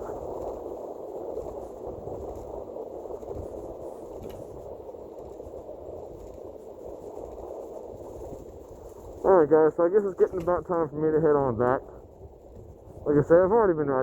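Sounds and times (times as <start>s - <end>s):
scooter wheels rolling: 0.0s - 9.2s.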